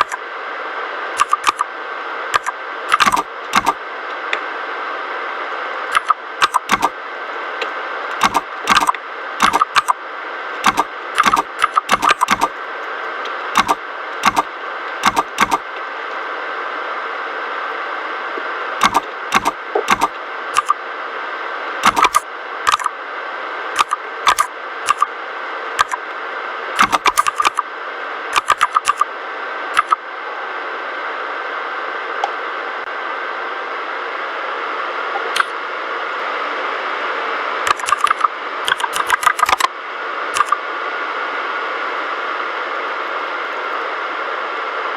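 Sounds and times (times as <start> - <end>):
mechanical keyboard key clacks: 10.6 - 12.5, 28.4 - 29.0, 37.7 - 39.6.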